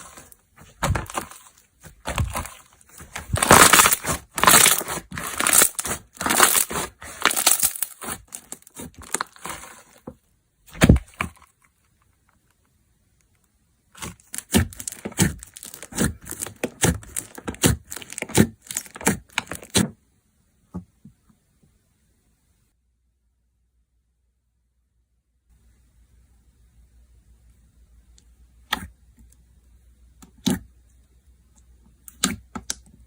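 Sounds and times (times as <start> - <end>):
slime squish: 0.0 - 10.1, 14.0 - 19.8
slime popping: 0.8 - 9.7.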